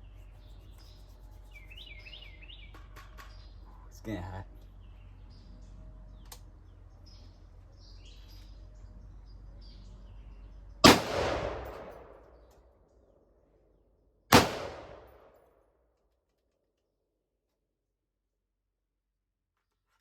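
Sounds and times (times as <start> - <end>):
faint birdsong: 0.0 - 13.0
gunshots with echoing tail: 10.8 - 12.3, 14.3 - 15.3.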